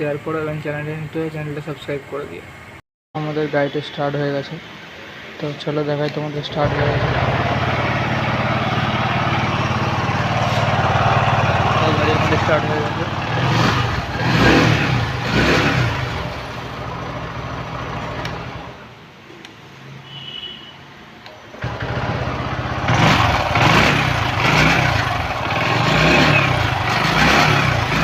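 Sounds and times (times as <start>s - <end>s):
moped engine revving: 6.6s - 18.8s, 21.6s - 28.0s.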